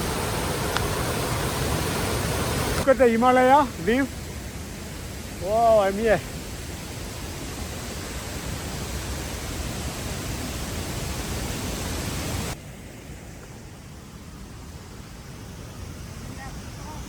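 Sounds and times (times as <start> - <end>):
rushing outdoor noise: 0.0 - 17.0.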